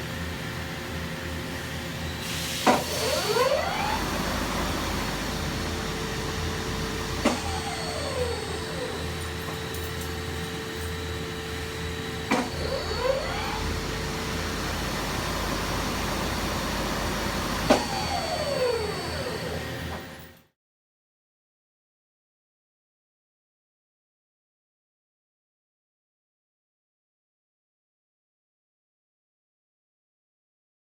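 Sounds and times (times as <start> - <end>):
lathe running: 2.2 - 20.1.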